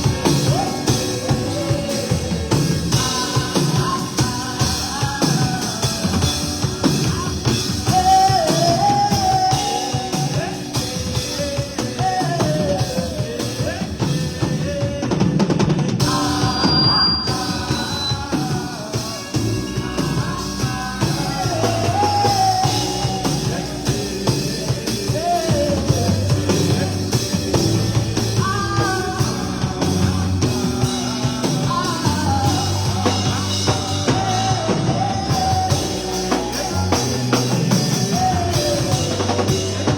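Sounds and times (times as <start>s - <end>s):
bass: 0.0s - 39.9s
drums: 0.0s - 39.9s
person singing: 0.0s - 39.9s.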